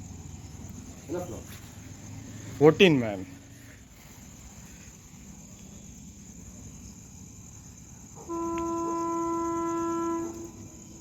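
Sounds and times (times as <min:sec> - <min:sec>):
locomotive air horn blast: 0:08.2 - 0:11.0.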